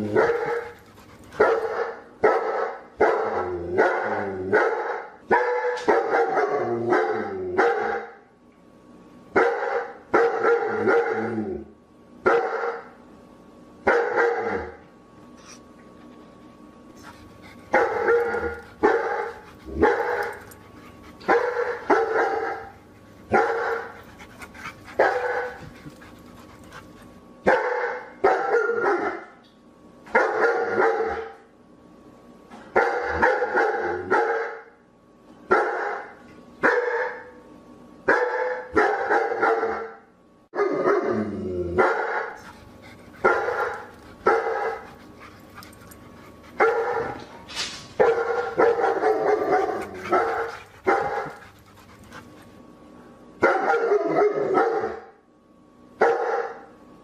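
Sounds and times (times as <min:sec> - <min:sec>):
dog barking: 0:00.0 - 0:08.2, 0:09.4 - 0:11.3, 0:12.3 - 0:12.9, 0:13.9 - 0:14.8, 0:17.7 - 0:20.5, 0:21.2 - 0:23.9, 0:25.0 - 0:25.7, 0:27.4 - 0:29.4, 0:30.1 - 0:31.4, 0:32.8 - 0:34.7, 0:35.5 - 0:37.3, 0:38.1 - 0:40.0, 0:41.8 - 0:42.5, 0:43.2 - 0:44.9, 0:46.6 - 0:47.2, 0:48.0 - 0:51.5, 0:53.4 - 0:55.2, 0:56.0 - 0:56.7.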